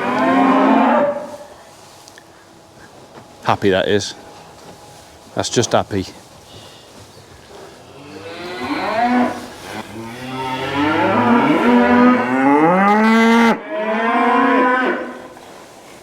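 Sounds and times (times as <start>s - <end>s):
cattle mooing: 0.0s - 1.5s, 7.8s - 15.3s.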